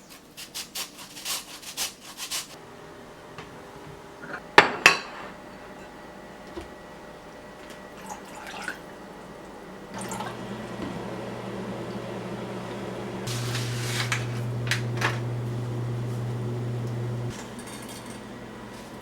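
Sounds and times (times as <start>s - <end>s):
low hum: 10.3s - 19.0s.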